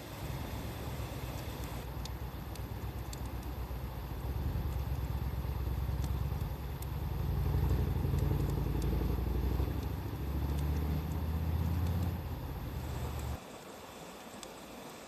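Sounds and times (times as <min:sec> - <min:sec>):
wood fire crackling: 0:00.0 - 0:13.4
low rumble: 0:01.7 - 0:13.4.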